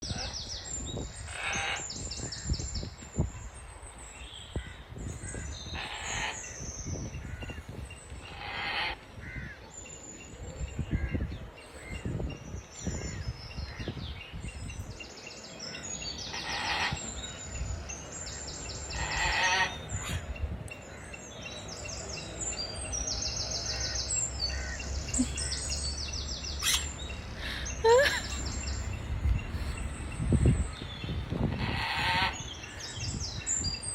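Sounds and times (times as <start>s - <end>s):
parrot chirping and squawking: 1.3s - 1.8s, 5.7s - 6.6s, 8.2s - 9.0s, 16.2s - 17.2s, 18.8s - 20.3s, 26.5s - 28.8s, 31.4s - 32.6s.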